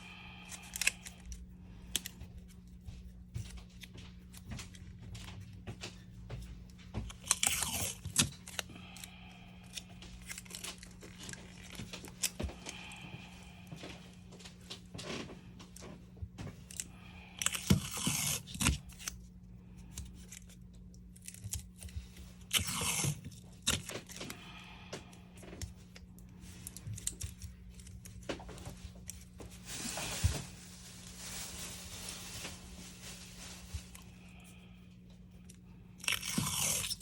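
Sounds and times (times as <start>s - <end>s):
steady low hum: 0.0s - 37.0s
tape tearing: 7.1s - 9.0s, 16.7s - 19.2s, 20.1s - 24.3s.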